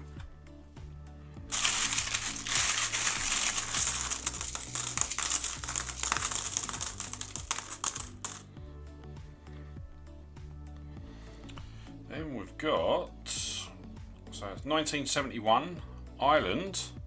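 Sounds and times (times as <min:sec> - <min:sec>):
coins jingling: 0:01.5 - 0:08.4.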